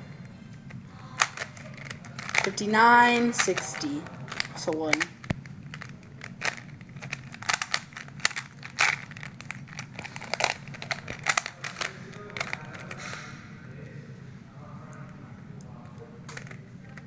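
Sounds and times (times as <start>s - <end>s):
puzzle cube clicking as turned: 3.2s - 13.2s.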